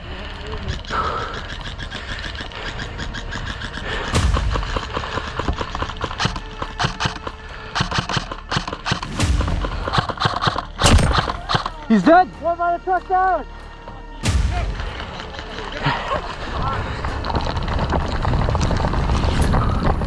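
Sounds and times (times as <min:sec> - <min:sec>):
airsoft guns firing: 0:08.1 - 0:11.7.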